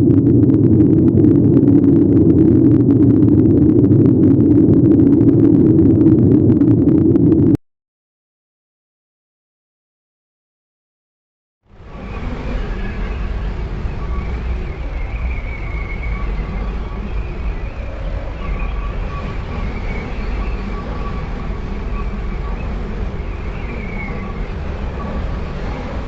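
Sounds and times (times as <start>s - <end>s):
deep synth rumble: 0.0s - 7.6s, 11.7s - 26.0s
faint wavering high tones: 11.8s - 26.0s.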